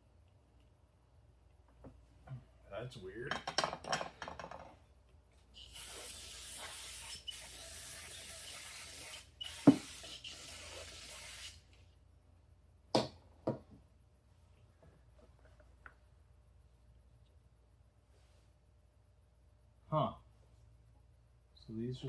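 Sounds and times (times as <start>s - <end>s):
pressurized spray hissing: 5.6s - 11.7s.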